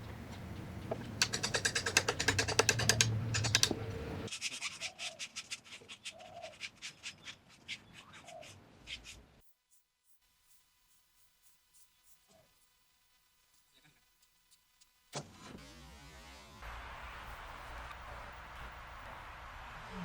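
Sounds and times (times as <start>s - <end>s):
scratching on wooden board: 0.1s - 9.1s.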